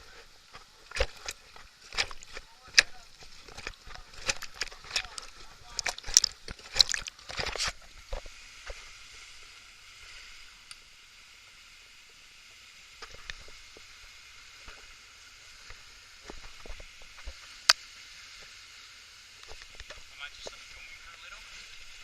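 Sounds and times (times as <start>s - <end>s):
river water rushing: 0.0s - 7.7s
knocks and splashes: 0.8s - 8.3s.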